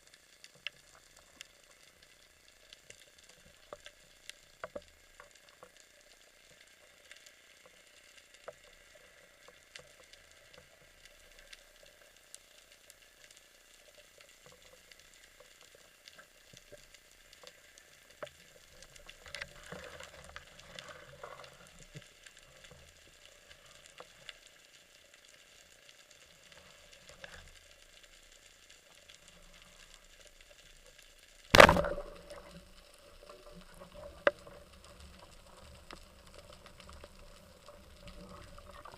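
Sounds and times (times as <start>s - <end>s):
snapping shrimp crackling underwater: 0.0s - 38.9s.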